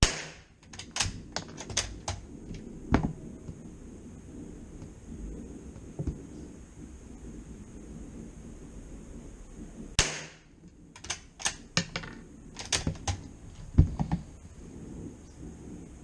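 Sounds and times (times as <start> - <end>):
rifle shot: 0.0 - 1.2, 10.0 - 10.5.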